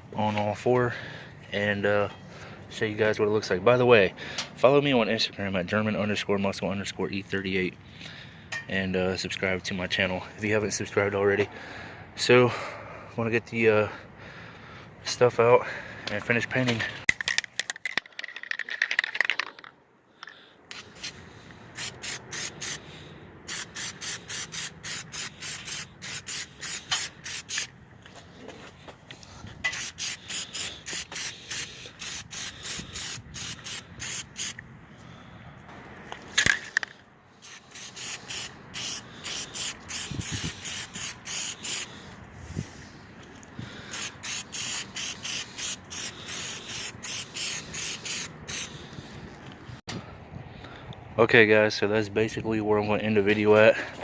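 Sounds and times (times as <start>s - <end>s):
aerosol spray bursts: 21.8s - 22.8s, 23.5s - 27.7s, 29.7s - 34.6s, 37.4s - 42.0s, 43.9s - 48.7s.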